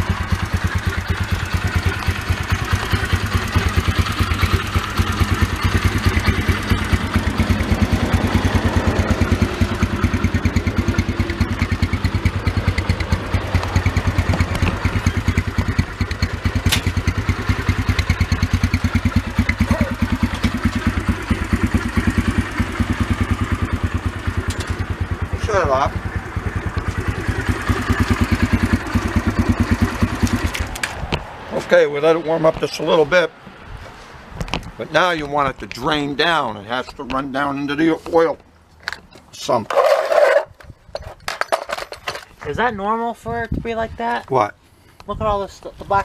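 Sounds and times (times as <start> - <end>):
dirt bike engine idling: 0.0 - 30.8.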